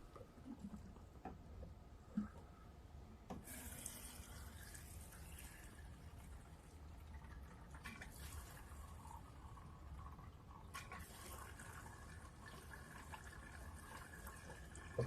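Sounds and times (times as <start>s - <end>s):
faint trickle of liquid: 3.4s - 15.0s.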